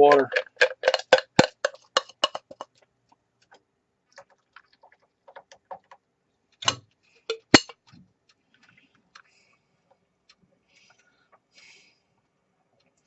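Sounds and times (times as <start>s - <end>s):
utensil tapping cooking pot: 0.1s - 2.8s, 6.6s - 7.9s.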